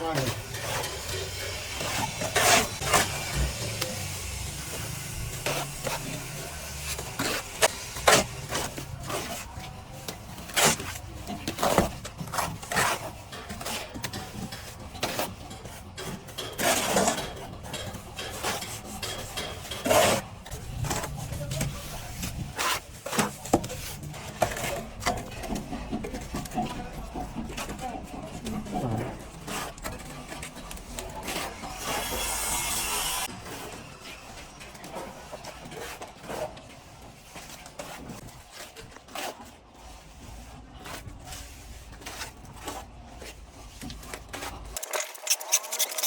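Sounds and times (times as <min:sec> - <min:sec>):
trowel scraping plaster: 0:00.1 - 0:46.0.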